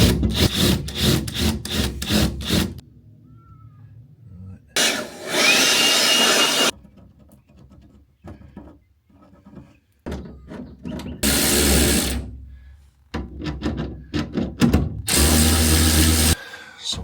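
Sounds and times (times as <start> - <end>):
power drill running: 4.8 - 6.7, 11.2 - 12.2, 15.1 - 16.4.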